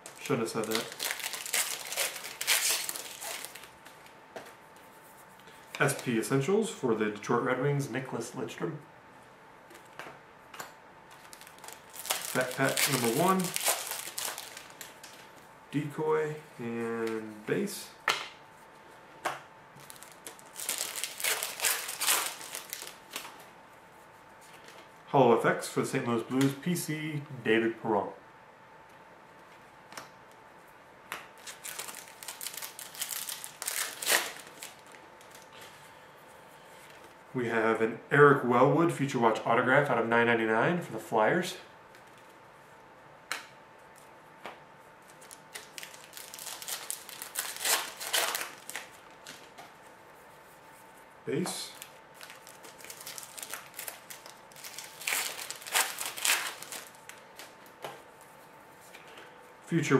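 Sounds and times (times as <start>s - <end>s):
foil wrapper crinkling: 0.0s - 4.1s, 11.2s - 15.3s, 19.8s - 23.4s, 31.4s - 35.5s, 45.0s - 49.6s, 51.6s - 57.8s
trading cards rustling and sliding: 11.1s - 14.9s.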